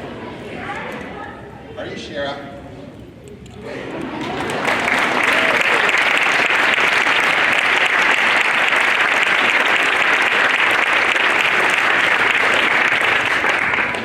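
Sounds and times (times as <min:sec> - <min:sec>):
audience clapping: 0:04.0 - 0:14.0.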